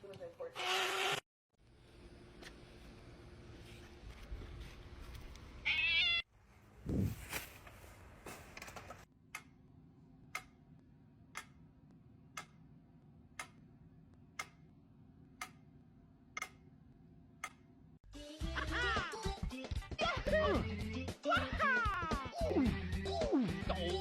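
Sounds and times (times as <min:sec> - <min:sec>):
clock ticking: 0:10.3 - 0:10.6, 0:11.3 - 0:11.6, 0:12.3 - 0:12.7, 0:13.3 - 0:13.7, 0:14.3 - 0:14.7, 0:15.4 - 0:15.7, 0:16.4 - 0:16.7.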